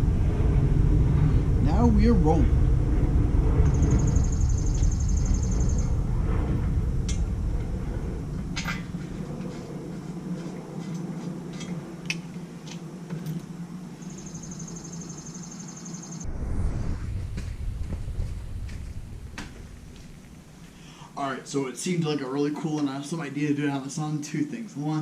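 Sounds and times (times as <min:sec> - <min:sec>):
high fast-pulsing buzz: 0:00.0 - 0:10.4
low rumble: 0:00.0 - 0:14.8, 0:16.0 - 0:21.6.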